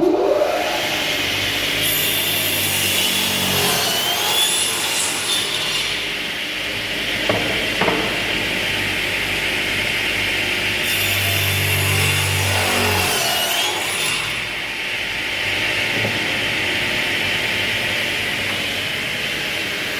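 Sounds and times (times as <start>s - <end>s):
saw blade cutting wood: 0.0s - 6.0s.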